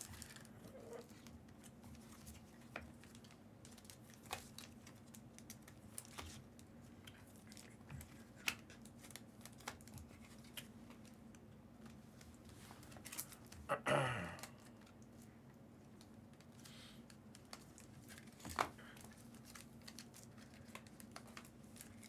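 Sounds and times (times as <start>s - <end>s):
trading cards clicking and rustling: 16.0s - 22.0s.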